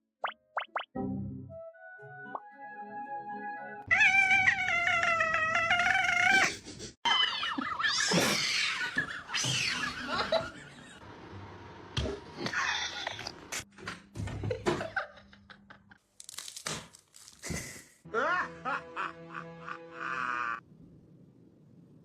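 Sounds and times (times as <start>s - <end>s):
cat yowling: 3.9s - 6.5s.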